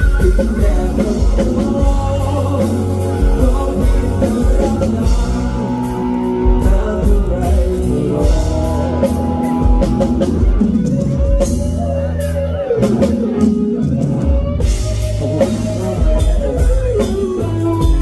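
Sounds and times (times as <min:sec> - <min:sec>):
band music: 0:00.0 - 0:18.0
drum kit beat: 0:00.0 - 0:18.0.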